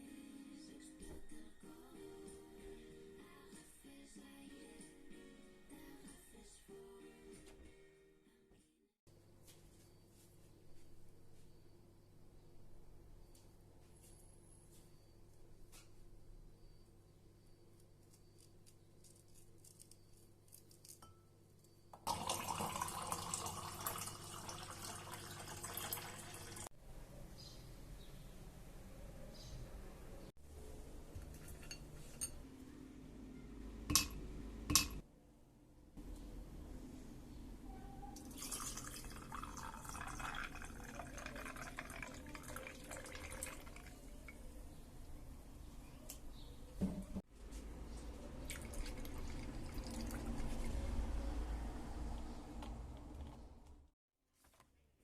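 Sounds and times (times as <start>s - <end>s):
liquid pouring and trickling: 22.1s - 26.7s, 38.2s - 44.5s, 48.4s - 51.0s
water running: 22.1s - 26.7s, 38.2s - 44.4s, 48.5s - 50.8s.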